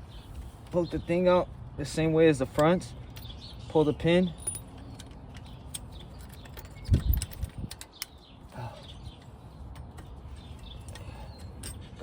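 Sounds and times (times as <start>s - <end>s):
small metallic clicks and clinks: 4.2s - 8.2s, 9.7s - 12.0s.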